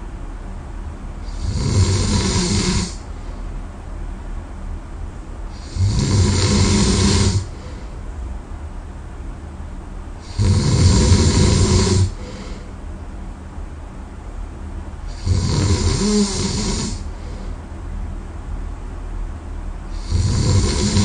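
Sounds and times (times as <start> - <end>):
person snoring heavily: 1.2 - 3.0, 5.5 - 7.9, 10.2 - 12.7, 15.1 - 17.5, 19.9 - 21.0
quiet breathing: 1.2 - 3.7, 5.5 - 8.1, 10.2 - 12.9, 15.0 - 17.8.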